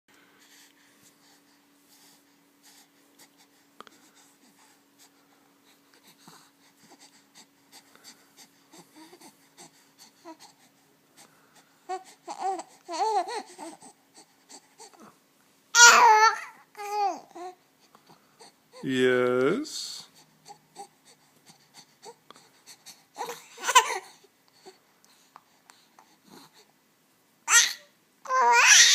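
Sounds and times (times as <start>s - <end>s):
faint steady hum: 0.1s - 28.9s
baby breathing: 0.3s - 15.2s, 20.0s - 26.7s
baby cooing: 11.9s - 15.1s, 15.8s - 17.6s, 23.2s - 24.2s, 27.5s - 28.9s.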